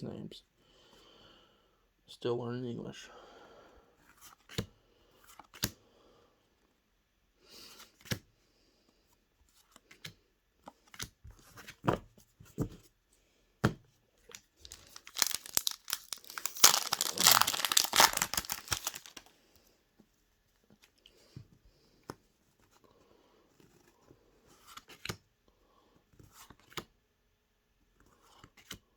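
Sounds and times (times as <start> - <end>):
foil wrapper crinkling and tearing: 14.6 - 19.3.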